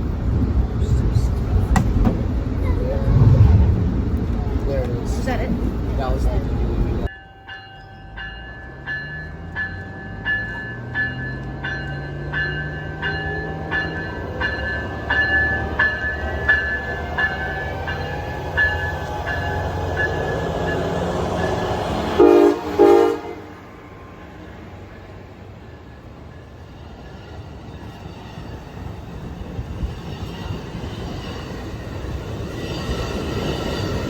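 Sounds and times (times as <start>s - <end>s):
diesel locomotive hum: 0.0s - 7.1s, 7.8s - 34.0s
train bell ringing: 7.0s - 28.5s
train horn blasts: 21.4s - 24.4s.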